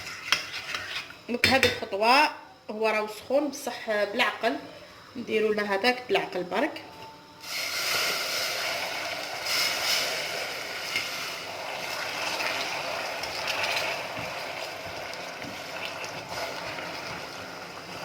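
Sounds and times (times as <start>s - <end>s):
hot sugar hissing and sizzling: 0.0s - 1.2s, 7.4s - 18.0s.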